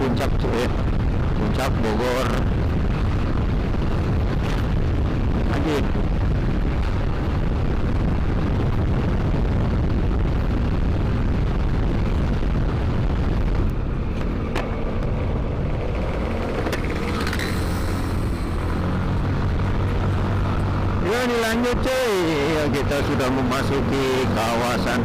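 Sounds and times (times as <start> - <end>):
wind buffeting microphone: 0.0 - 25.0
scooter engine humming: 13.6 - 21.2.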